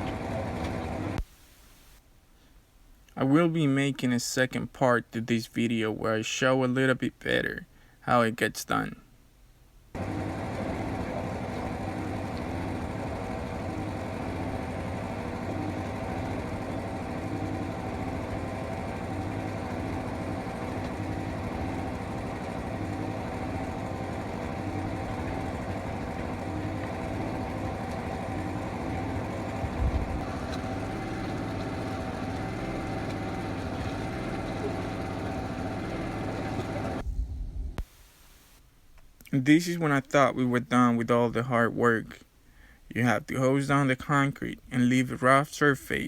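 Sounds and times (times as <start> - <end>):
small engine running: 0.0 - 1.2, 10.0 - 37.2.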